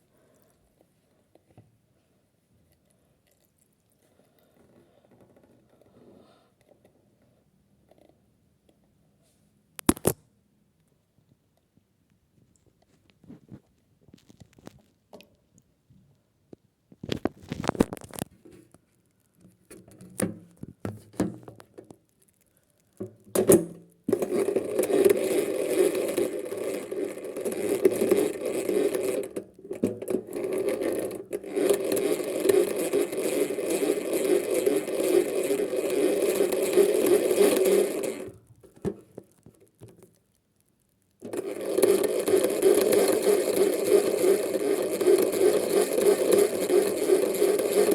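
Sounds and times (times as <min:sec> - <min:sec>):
small electric motor humming: 0:24.1 - 0:38.3, 0:41.3 - 0:47.9.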